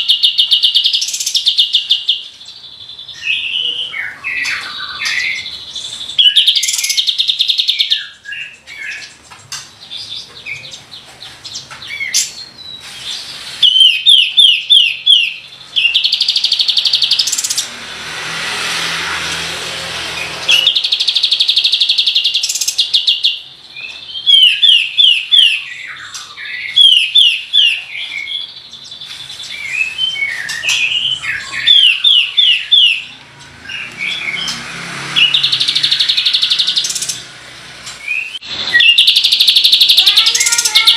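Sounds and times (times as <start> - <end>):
bird singing trills and whistles: 0.0 - 17.7, 20.2 - 37.4, 38.0 - 40.9
loud rasping noise: 17.0 - 21.0.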